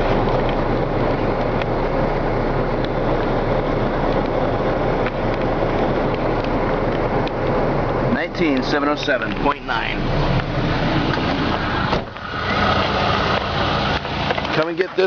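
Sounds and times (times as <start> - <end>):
truck engine idling: 0.0 - 15.0.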